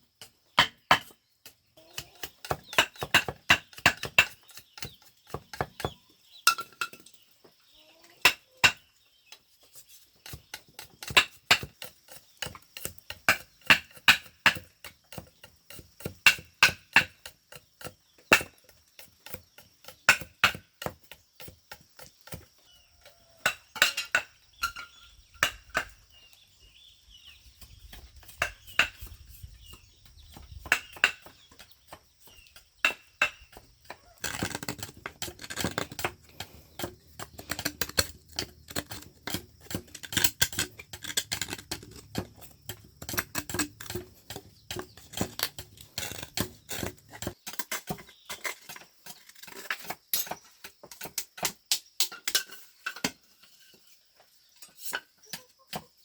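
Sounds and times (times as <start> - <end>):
tool striking hard material: 10.2 - 22.4.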